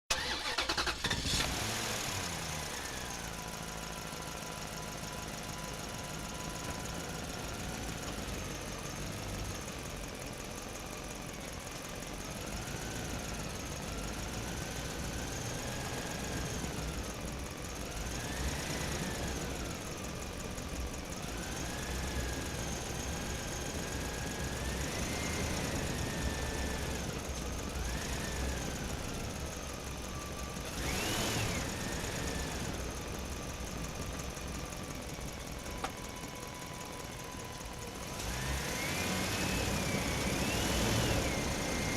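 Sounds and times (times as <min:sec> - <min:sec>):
truck engine revving: 0:00.1 - 0:04.0, 0:12.5 - 0:20.1, 0:21.2 - 0:35.2, 0:38.0 - 0:41.9.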